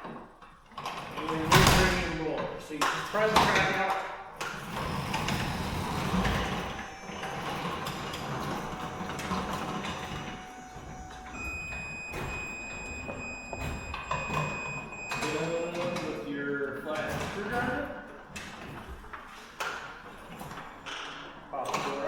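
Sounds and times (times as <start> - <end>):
steady high-pitched tone: 6.4 - 15.7.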